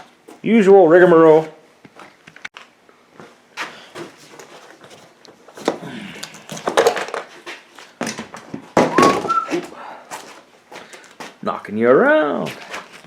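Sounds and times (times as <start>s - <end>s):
tool clicks and rattles: 5.6s - 7.3s.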